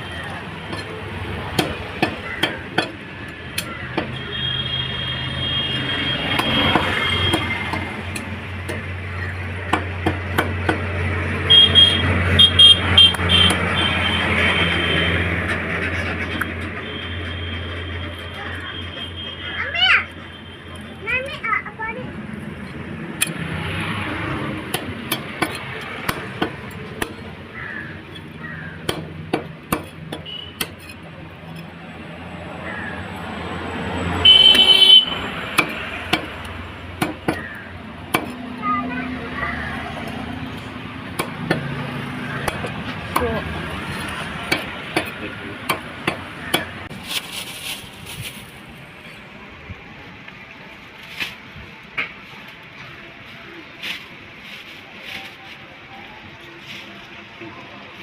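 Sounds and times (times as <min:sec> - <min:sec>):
street traffic hum: 0:00.0 - 0:58.0.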